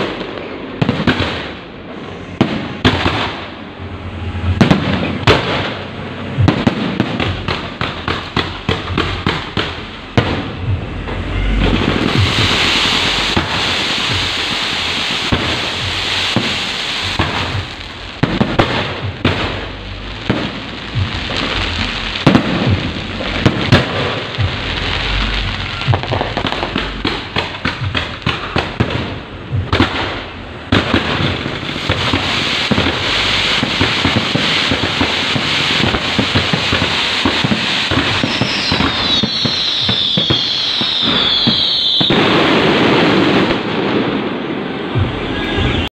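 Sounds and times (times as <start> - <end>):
fireworks crackling and popping: 0.0 - 45.8
falling firework whistles: 11.4 - 17.7, 31.8 - 43.7.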